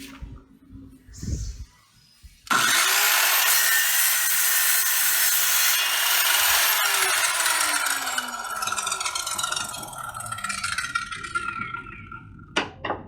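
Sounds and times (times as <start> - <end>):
circular saw cutting wood: 2.5 - 12.1.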